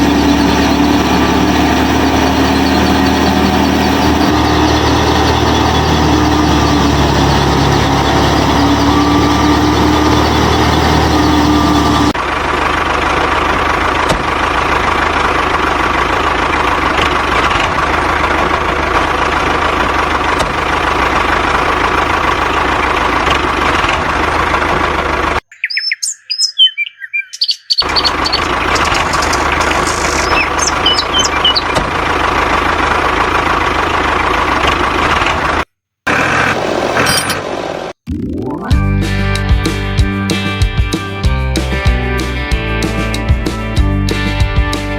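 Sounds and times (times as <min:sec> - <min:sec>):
small birds chirping: 0:00.0 - 0:12.2, 0:25.4 - 0:31.9
small motor whining: 0:00.0 - 0:12.2, 0:27.8 - 0:32.0.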